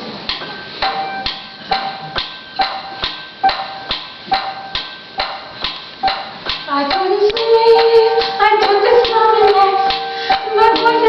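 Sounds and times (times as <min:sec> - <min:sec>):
percussive beat with pitched ring: 0:00.3 - 0:11.0.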